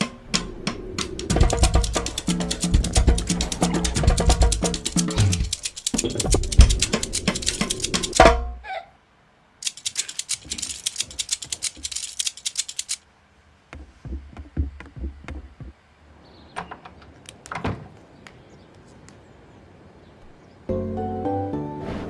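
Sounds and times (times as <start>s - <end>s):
rapid clatter of sharp clicks: 0.0s - 8.4s, 9.6s - 13.0s
scattered knocks and taps: 0.0s - 8.5s, 9.6s - 13.0s, 13.7s - 15.8s.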